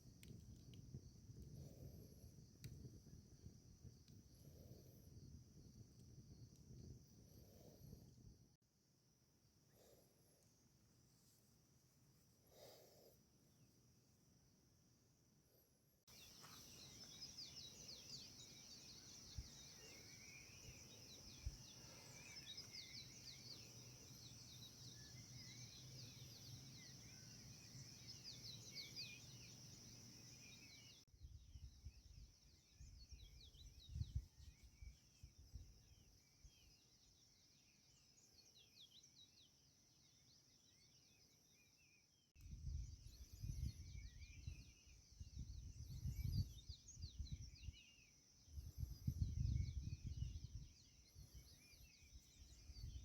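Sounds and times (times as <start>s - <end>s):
faint birds chirping: 9.1s - 53.0s
wind gusts on microphone: 42.5s - 47.8s, 48.5s - 51.5s.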